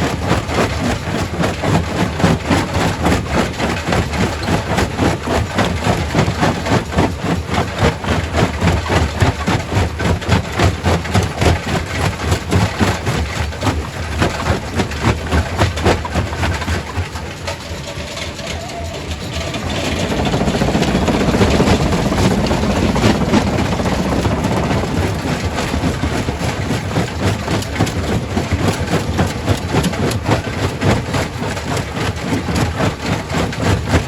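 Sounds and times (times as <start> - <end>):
rock crusher clattering: 0.0 - 34.0
low machine drone: 14.3 - 30.8.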